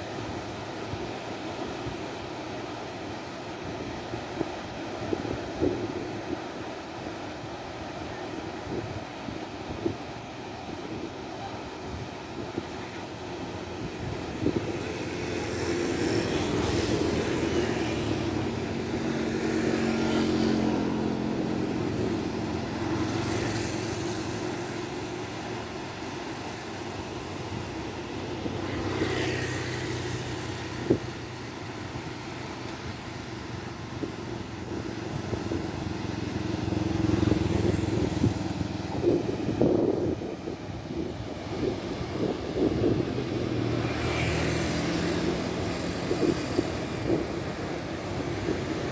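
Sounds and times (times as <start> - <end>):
boat engines running: 10.1 - 48.9.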